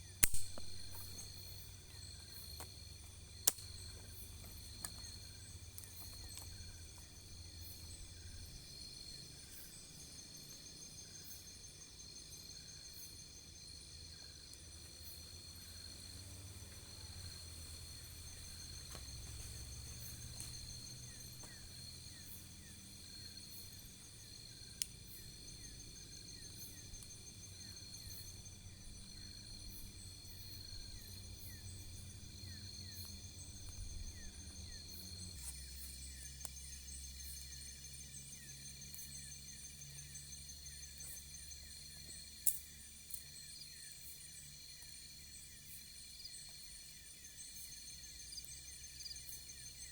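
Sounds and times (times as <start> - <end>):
crickets and insects trilling: 0.0 - 49.9
sharp click: 0.2 - 1.4.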